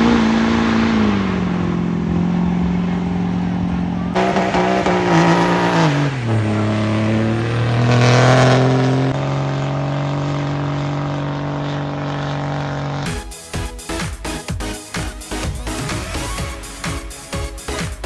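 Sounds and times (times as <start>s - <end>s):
car engine revving hard: 0.0s - 13.1s.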